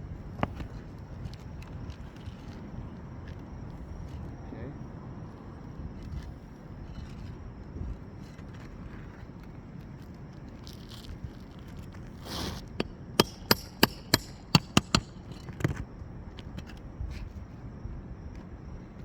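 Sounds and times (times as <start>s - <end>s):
metal tool scraping shingle: 10.7s - 15.8s
sharp metallic taps: 12.8s - 15.2s.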